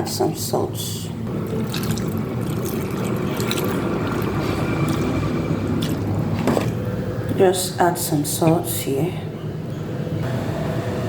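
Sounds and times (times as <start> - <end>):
liquid sloshing: 1.3 - 7.0.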